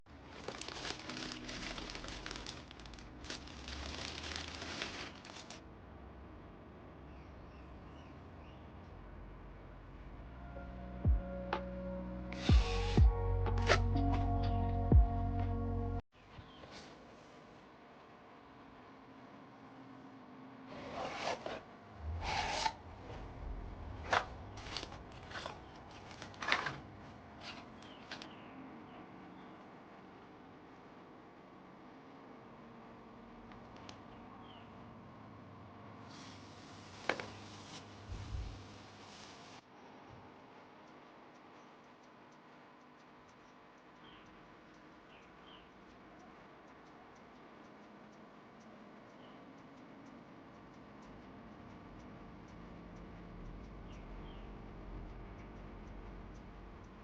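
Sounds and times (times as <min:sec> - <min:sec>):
rustling sliding scrapes: 0:03.3 - 0:05.6, 0:20.7 - 0:23.3, 0:36.1 - 0:39.6.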